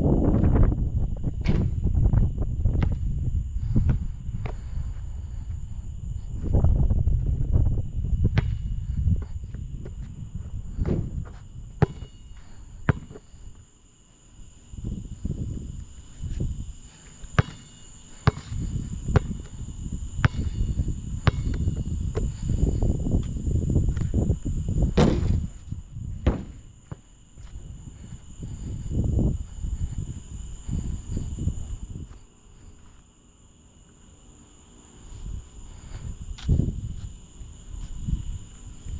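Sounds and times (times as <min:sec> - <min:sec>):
insect trill: 0:00.0 - 0:38.9
basketball bouncing on hard court: 0:08.4 - 0:08.7, 0:11.8 - 0:12.2, 0:12.9 - 0:13.2, 0:17.4 - 0:19.5, 0:20.2 - 0:22.3, 0:26.2 - 0:27.0.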